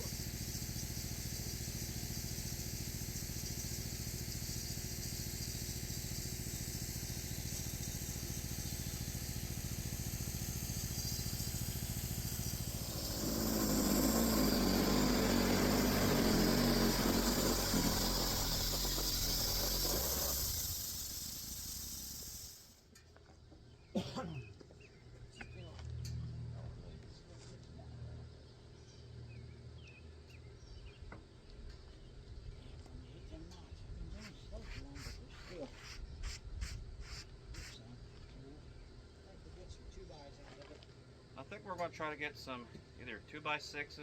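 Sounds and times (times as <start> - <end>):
band sawmill cutting log: 0.0 - 22.8.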